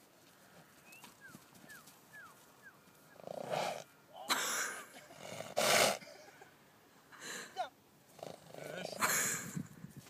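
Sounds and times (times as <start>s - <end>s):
horse snorting: 3.2s - 3.9s, 5.0s - 6.0s, 8.1s - 9.4s.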